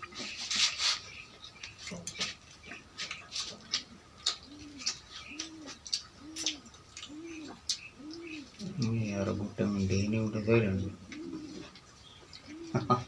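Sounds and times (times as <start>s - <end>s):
dove cooing: 2.6s - 13.0s.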